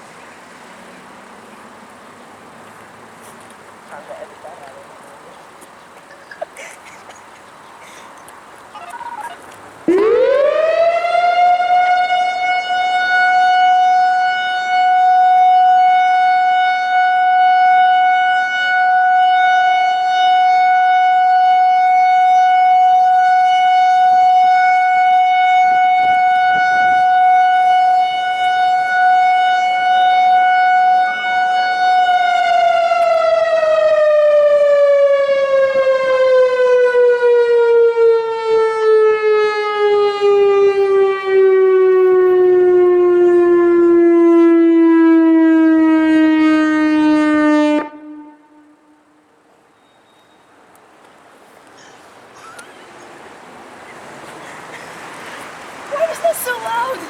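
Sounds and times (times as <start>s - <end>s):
electronic warning siren: 8.8s - 48.5s.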